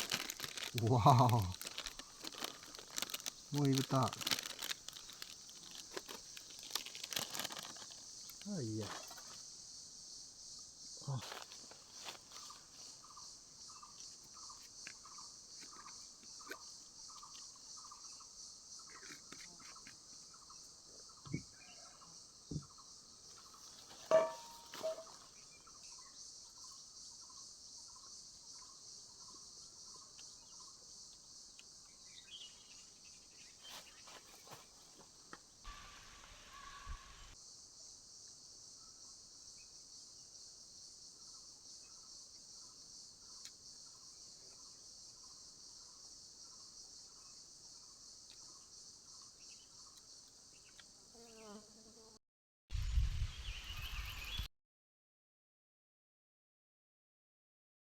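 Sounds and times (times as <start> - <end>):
insects buzzing high: 0.0 - 34.6, 44.9 - 52.2.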